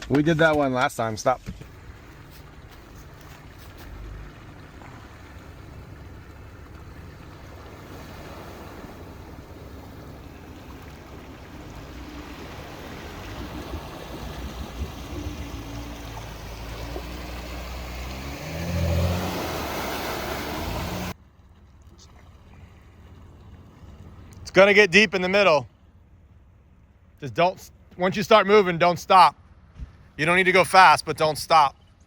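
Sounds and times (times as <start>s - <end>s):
water sloshing and splashing: 1.5s - 24.5s
car engine running: 1.6s - 21.2s.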